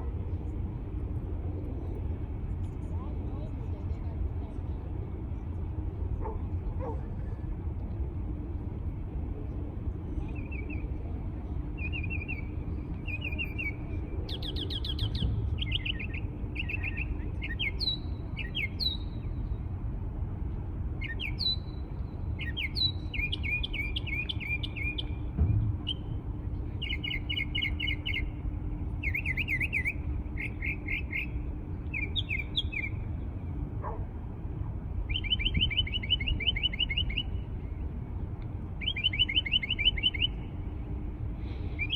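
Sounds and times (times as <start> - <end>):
faint hum: 0.0 - 41.9
songbird trilling: 11.8 - 19.4, 21.0 - 21.8, 22.4 - 25.2, 26.8 - 28.4, 29.0 - 33.0, 35.1 - 37.5, 38.8 - 40.5.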